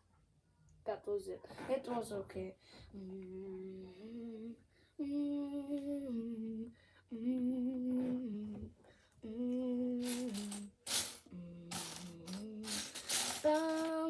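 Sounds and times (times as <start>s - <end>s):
child humming: 3.0s - 10.6s, 11.3s - 12.0s.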